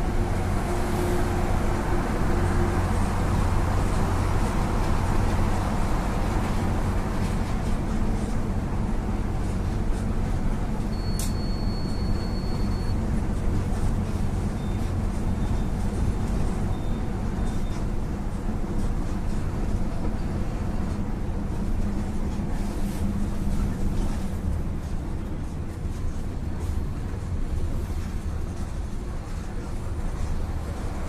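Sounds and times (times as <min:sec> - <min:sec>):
bus diesel engine running: 0:00.0 - 0:31.0
faint short beeps: 0:10.9 - 0:13.0, 0:16.7 - 0:17.8
high steady beep: 0:10.9 - 0:13.0
click: 0:11.2 - 0:11.4.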